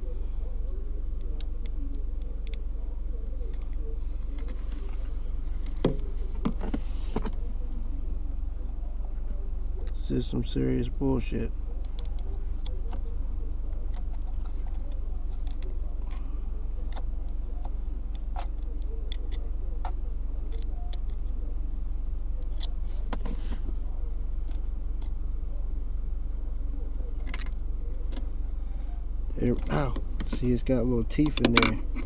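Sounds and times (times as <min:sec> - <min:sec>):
car engine idling: 0:00.0 - 0:32.0.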